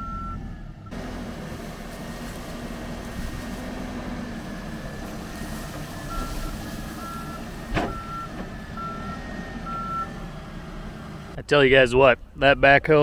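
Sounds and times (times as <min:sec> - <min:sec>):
reversing alarm beeping: 0:00.0 - 0:01.0, 0:06.0 - 0:10.2
backhoe engine running: 0:00.0 - 0:11.4.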